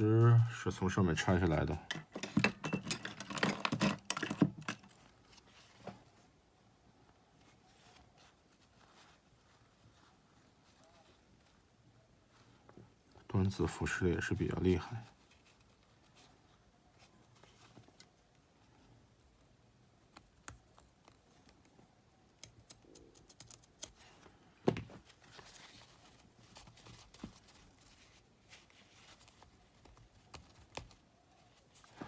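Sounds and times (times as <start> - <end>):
clicks of small metal parts: 22.3 - 24.0.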